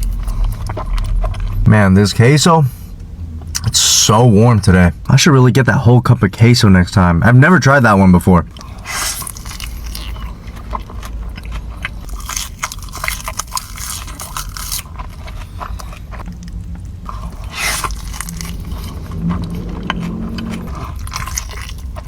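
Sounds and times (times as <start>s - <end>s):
person chewing crunchy food: 0.0s - 1.7s, 8.5s - 22.0s.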